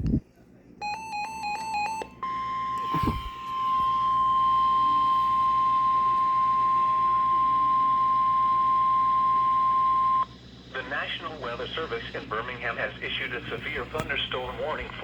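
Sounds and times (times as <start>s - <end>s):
steady alarm tone: 0.8s - 10.8s.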